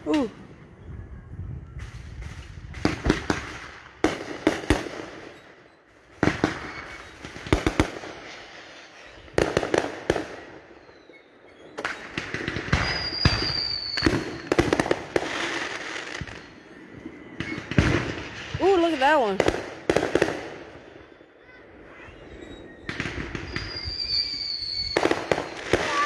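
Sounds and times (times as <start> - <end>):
fireworks crackling: 0.0 - 0.8, 1.6 - 26.0
fireworks bangs: 1.7 - 26.0
high falling whistle: 10.8 - 14.4, 22.2 - 26.0.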